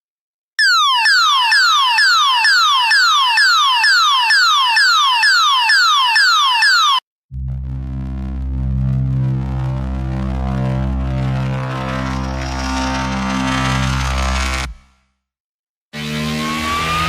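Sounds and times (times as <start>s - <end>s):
low electronic hum: 7.3s - 14.8s
pulsing electronic sweeping tone: 7.4s - 14.6s.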